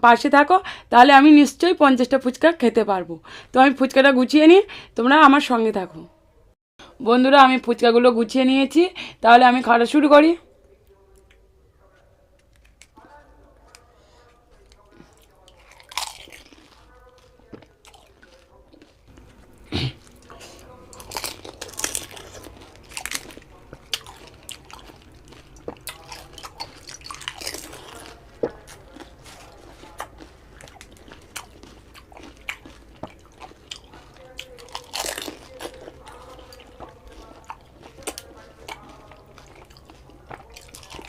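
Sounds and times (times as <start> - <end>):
wet chewing: 12.4 - 41.0
crisp crunches of fried shells: 14.5 - 41.0.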